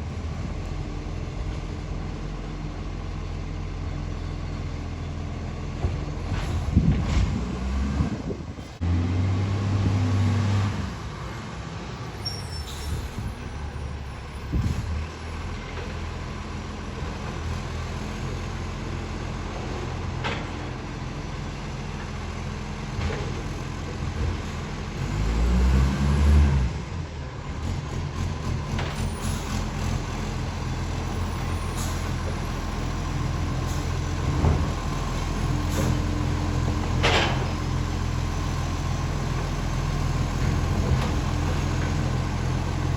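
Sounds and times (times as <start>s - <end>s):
garbage truck engine revving: 6.2s - 11.1s, 23.9s - 42.9s.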